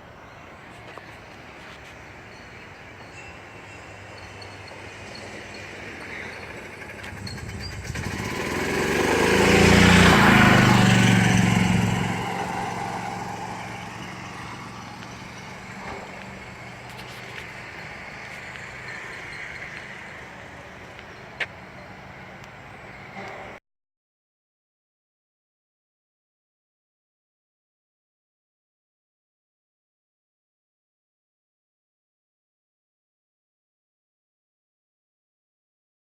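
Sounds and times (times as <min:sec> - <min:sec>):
low engine hum: 0:04.6 - 0:23.6
vehicle driving past: 0:04.9 - 0:23.6.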